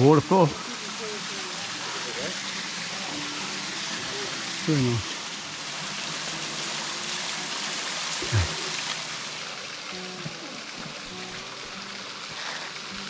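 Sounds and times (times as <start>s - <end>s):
waterfall splashing into creek: 0.0s - 13.0s
short voice sound: 8.2s - 8.7s.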